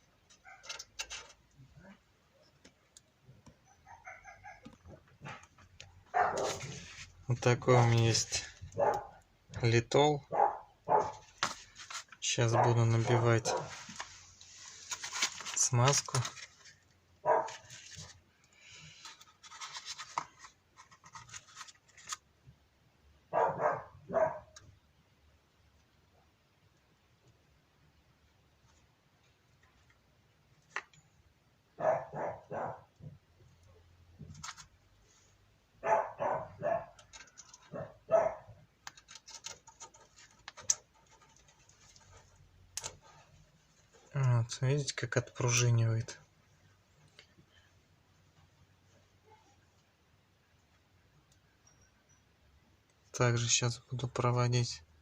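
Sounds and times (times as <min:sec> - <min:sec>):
dog barking: 0:03.6 - 0:04.7, 0:06.1 - 0:06.8, 0:08.8 - 0:09.2, 0:10.3 - 0:11.2, 0:12.5 - 0:13.7, 0:17.2 - 0:17.6, 0:23.3 - 0:24.6, 0:31.8 - 0:32.9, 0:35.8 - 0:37.0, 0:37.7 - 0:38.6
handling noises: 0:04.3 - 0:22.2
clicks and scrapes of hand work: 0:36.9 - 0:37.9, 0:38.8 - 0:43.4.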